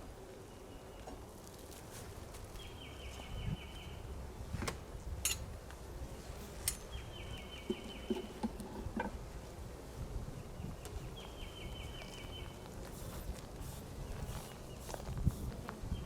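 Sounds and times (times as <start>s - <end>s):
honeybees buzzing: 11.0s - 16.0s.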